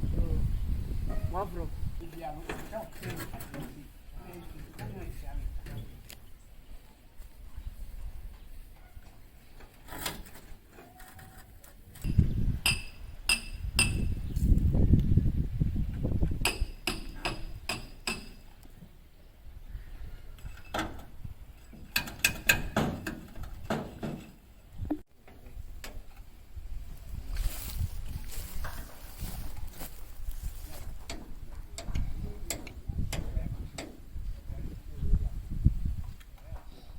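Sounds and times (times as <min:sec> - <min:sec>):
metallic clanks on steel: 0:16.4 - 0:18.5.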